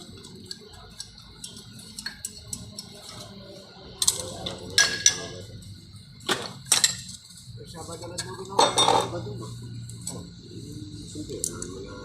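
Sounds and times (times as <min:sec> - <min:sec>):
metal tools tapping and clinking: 0:04.0 - 0:05.4, 0:06.2 - 0:07.2, 0:08.1 - 0:09.2.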